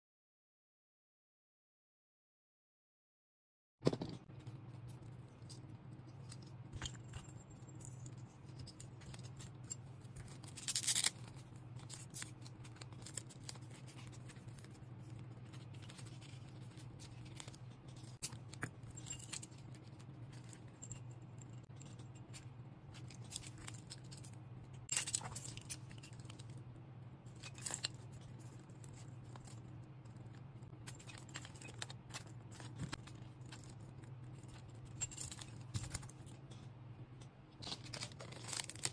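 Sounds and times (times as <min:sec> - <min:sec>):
steady low hum: 0:03.9 - 0:38.9
metal keychain parts clinking: 0:05.4 - 0:14.6, 0:15.4 - 0:26.6, 0:27.3 - 0:36.4.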